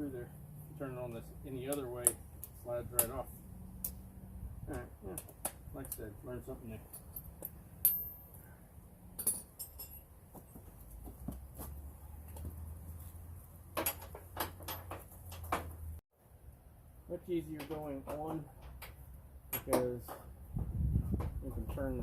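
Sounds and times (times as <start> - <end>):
metallic clinks of tools: 9.2 - 10.1.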